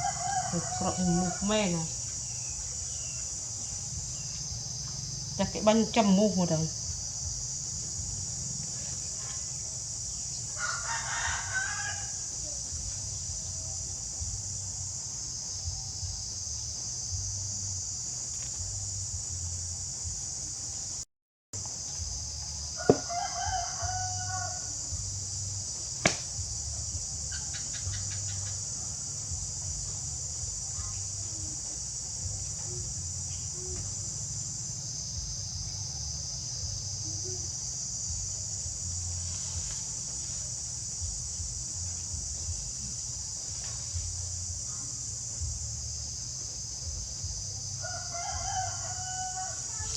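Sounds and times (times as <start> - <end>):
high-pitched insect drone: 0.0 - 21.0, 21.6 - 49.9.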